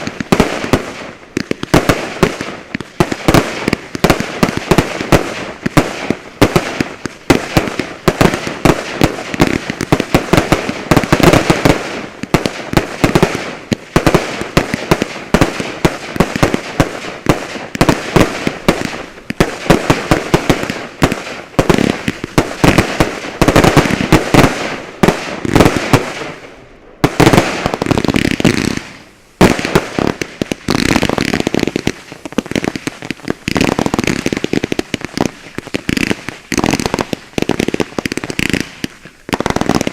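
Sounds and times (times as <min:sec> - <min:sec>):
fireworks bangs: 0:00.0 - 0:39.9.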